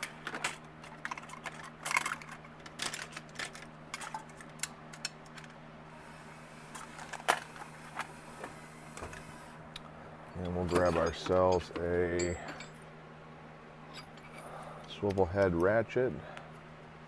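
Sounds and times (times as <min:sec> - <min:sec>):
metal tools clattering: 0:00.0 - 0:05.5, 0:10.2 - 0:12.9, 0:13.9 - 0:14.9
steady low hum: 0:00.0 - 0:17.0.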